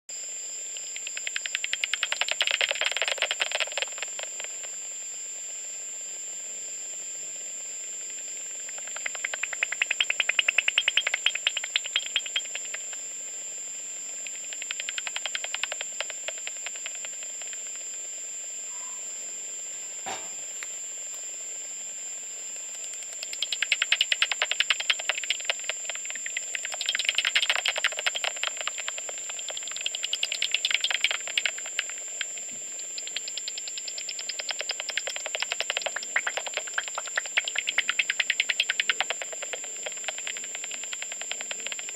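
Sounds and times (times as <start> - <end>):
detector hiss with high tone: 0.1 - 41.9
bat detector rapid clicking: 0.8 - 4.8, 8.1 - 13.2, 14.1 - 18.1, 22.6 - 41.9.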